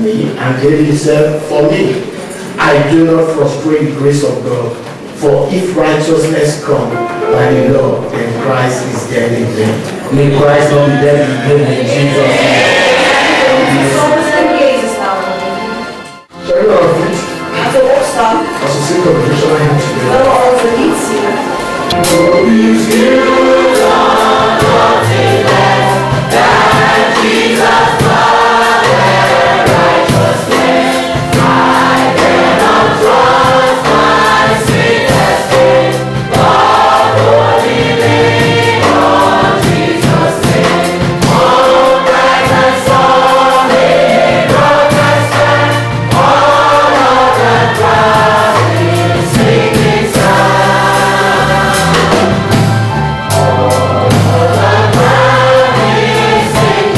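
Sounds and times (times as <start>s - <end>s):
congregation singing a hymn: 0.0s - 56.9s
steady bass accompaniment: 5.4s - 56.9s.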